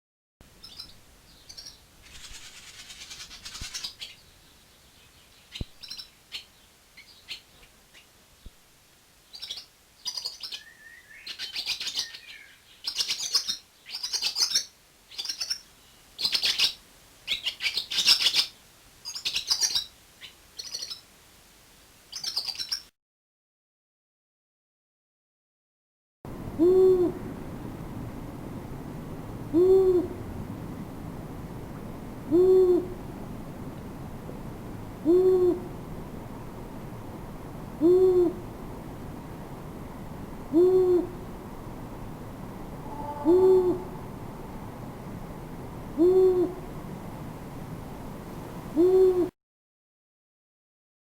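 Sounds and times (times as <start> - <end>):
songbird chirping and trilling: 0.6 - 8.1, 9.3 - 21.1.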